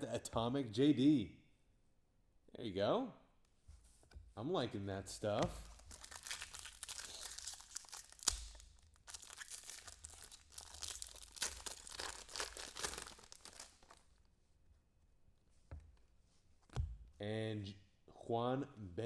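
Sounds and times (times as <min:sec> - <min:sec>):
cards rustling: 0:05.4 - 0:14.0
foil pack tearing: 0:05.6 - 0:14.0.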